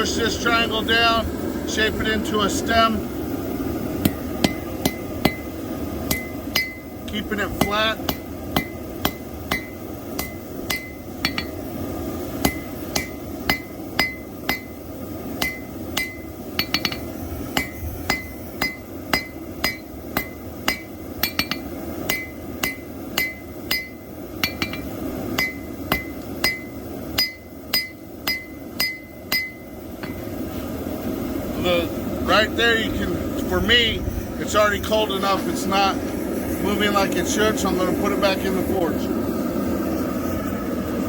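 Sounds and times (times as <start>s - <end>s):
hammer striking steel on anvil: 4.0s - 11.6s, 12.4s - 14.8s, 15.4s - 30.3s
low rush: 27.7s - 41.0s.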